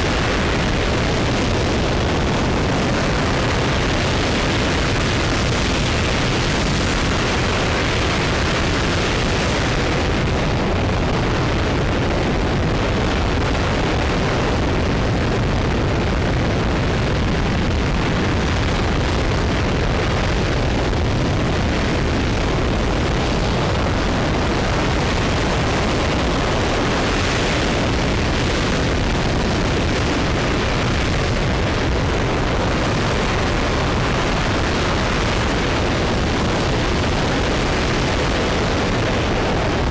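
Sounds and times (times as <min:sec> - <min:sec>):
rocket engine roaring: 0:00.0 - 0:39.9.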